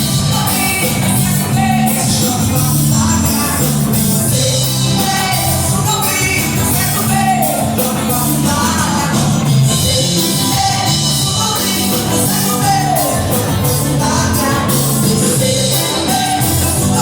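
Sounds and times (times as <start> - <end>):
person singing with music: 0.0 - 17.0.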